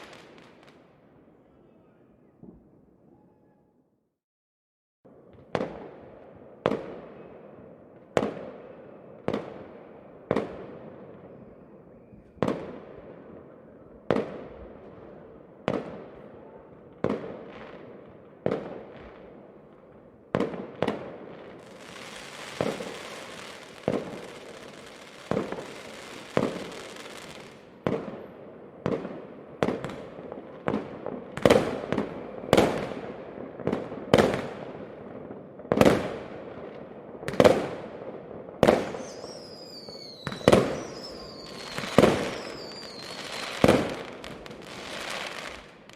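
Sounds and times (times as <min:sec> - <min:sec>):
fireworks bangs: 0:00.0 - 0:00.8, 0:20.3 - 0:45.9.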